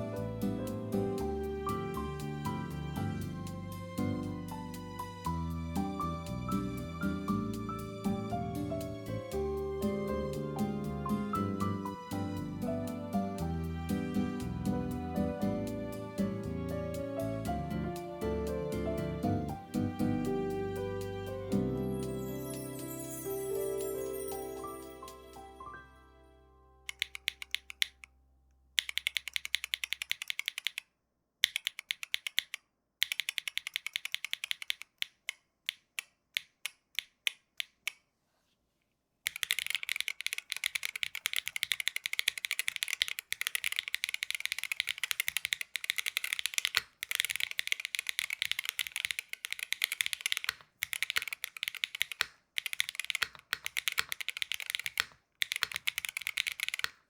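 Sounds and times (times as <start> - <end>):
typing on a keyboard: 26.9 - 28.1, 28.8 - 38.0, 39.3 - 57.0.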